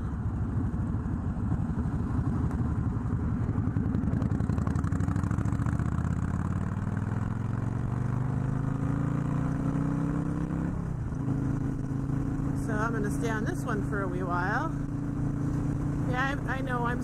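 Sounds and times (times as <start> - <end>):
motorcycle engine accelerating: 0.0 - 17.0.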